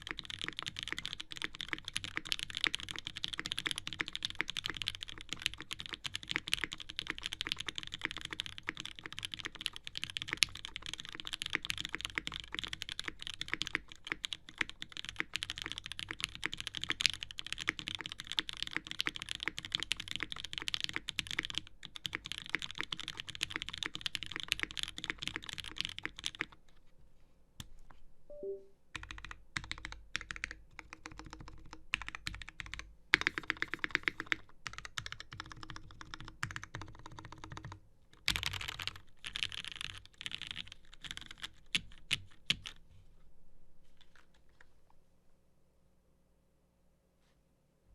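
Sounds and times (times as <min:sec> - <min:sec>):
mechanical keyboard typing: 0:00.0 - 0:26.6, 0:28.3 - 0:42.8.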